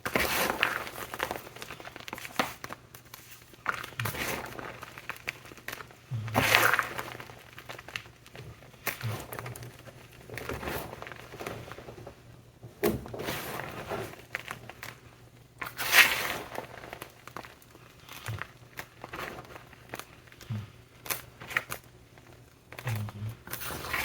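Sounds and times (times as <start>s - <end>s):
chalk crunching when crushed: 0.0s - 11.7s, 15.6s - 21.8s, 22.8s - 24.0s.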